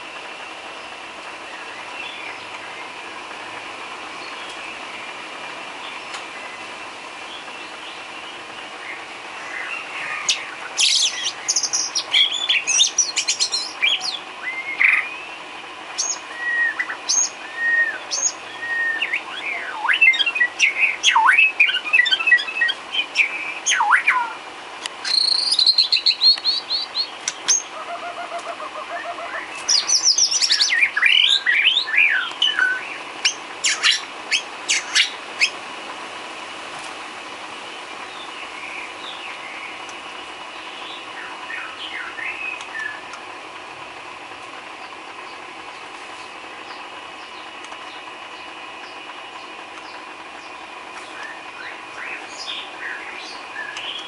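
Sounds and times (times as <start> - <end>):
songbird whistles and trills: 7.3 - 24.4, 25.0 - 35.6, 40.6 - 43.1.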